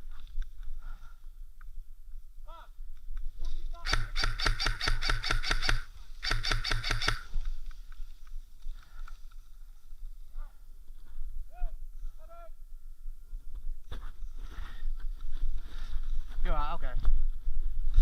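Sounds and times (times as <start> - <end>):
airsoft gun firing bursts: 3.8 - 7.3.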